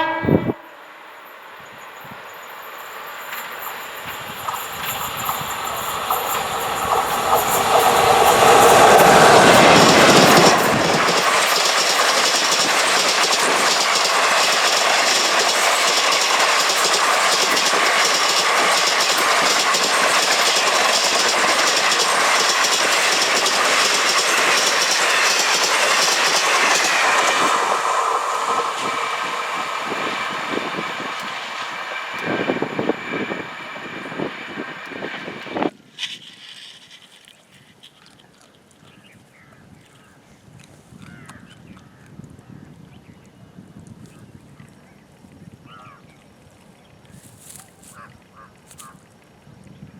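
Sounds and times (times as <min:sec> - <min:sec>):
train passing at speed: 0:00.0 - 0:35.7
wheels clacking over rail joints: 0:02.9 - 0:36.2.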